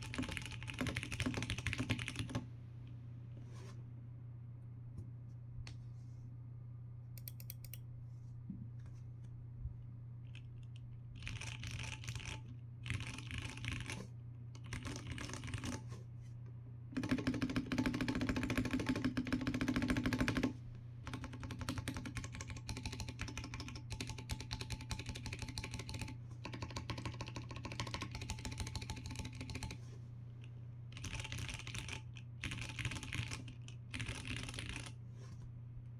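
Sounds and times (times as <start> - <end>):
mechanical keyboard typing: 0.0 - 2.4, 11.2 - 14.0, 14.6 - 15.8, 17.0 - 20.5, 21.1 - 29.8, 30.9 - 35.0.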